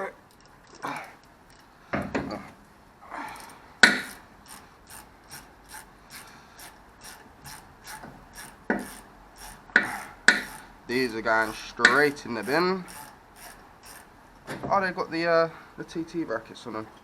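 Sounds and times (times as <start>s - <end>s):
ratchet wrench clicking: 3.3s - 14.2s
metal tools knocking: 9.7s - 14.1s.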